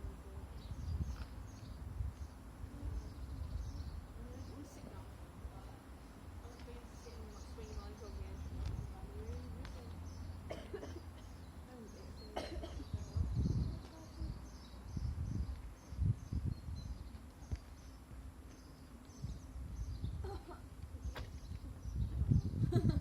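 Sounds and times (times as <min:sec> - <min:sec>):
girl coughing: 0:10.5 - 0:11.3, 0:12.4 - 0:13.0.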